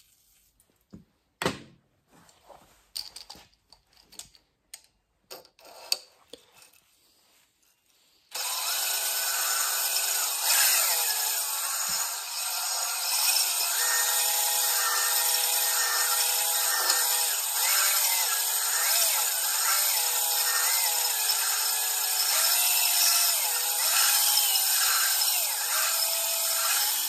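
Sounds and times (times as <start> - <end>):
power drill motor whine: 8.3 - 27.0.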